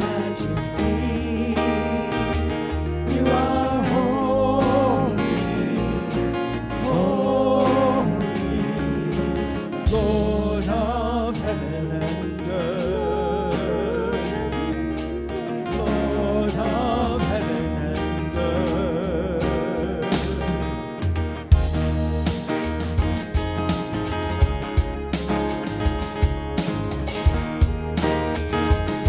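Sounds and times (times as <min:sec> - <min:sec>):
person singing: 0:00.0 - 0:20.8
worship band playing: 0:00.0 - 0:29.0.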